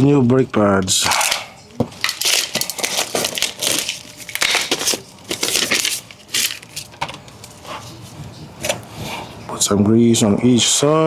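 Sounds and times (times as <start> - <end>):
packaging crinkling: 1.0 - 8.2.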